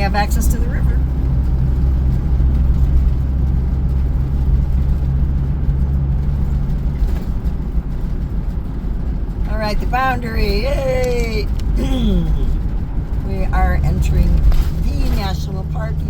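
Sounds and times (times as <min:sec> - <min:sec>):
car engine hum: 0:00.0 - 0:16.0.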